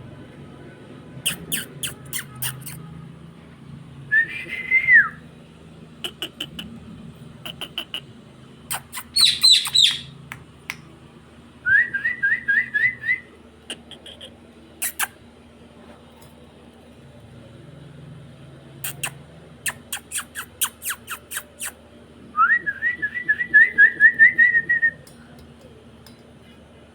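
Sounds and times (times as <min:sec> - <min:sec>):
parrot squawk: 0:01.3 - 0:02.8, 0:08.7 - 0:10.1
parrot whistling: 0:08.7 - 0:10.1.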